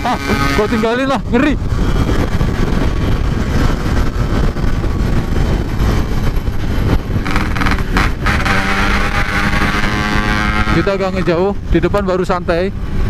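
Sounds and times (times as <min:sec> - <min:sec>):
wind and road noise: 0:00.0 - 0:13.0
motorcycle engine accelerating: 0:01.7 - 0:11.5.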